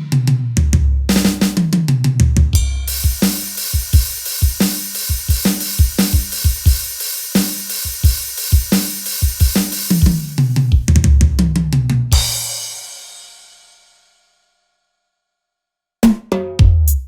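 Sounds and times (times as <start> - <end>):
kick and snare drum groove: 0.0 - 13.5, 16.0 - 17.0
tom drum fill: 0.7 - 13.3
crash cymbal ringing: 2.6 - 10.7.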